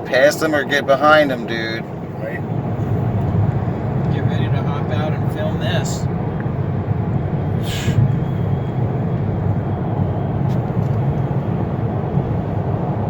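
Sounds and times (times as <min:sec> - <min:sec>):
car road rumble from cabin: 0:00.0 - 0:13.0
short hiss: 0:07.6 - 0:08.0.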